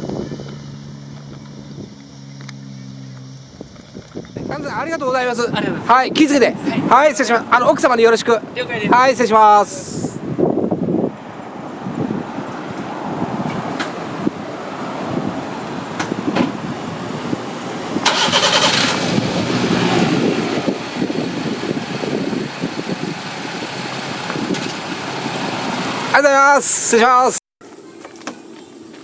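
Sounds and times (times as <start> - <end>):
car engine running: 0.2 - 4.4, 16.5 - 26.2.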